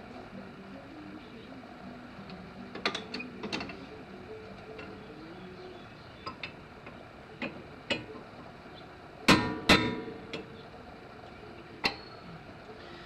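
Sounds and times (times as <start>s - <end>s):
light metal clicks and taps: 6.2s - 8.2s
loud ringing metal clanks: 9.3s - 10.5s.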